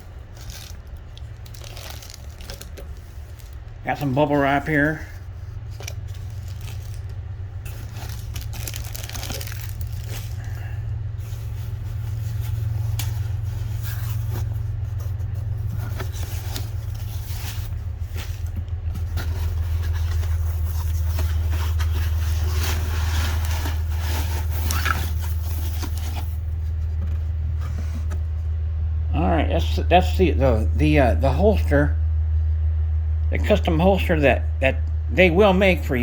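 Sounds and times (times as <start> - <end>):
bubble wrap crackling: 0.0 - 4.1, 5.2 - 26.8
steady low rumble: 0.0 - 36.0.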